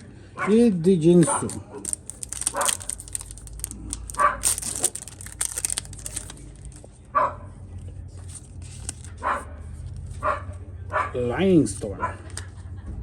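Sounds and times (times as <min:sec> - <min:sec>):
dog barking: 0:00.4 - 0:00.6, 0:01.2 - 0:01.9, 0:02.5 - 0:02.9, 0:04.2 - 0:04.6, 0:07.2 - 0:07.5, 0:09.2 - 0:09.6, 0:10.2 - 0:11.3, 0:12.0 - 0:12.3
cards rustling and clicking: 0:01.2 - 0:07.0, 0:08.1 - 0:09.2.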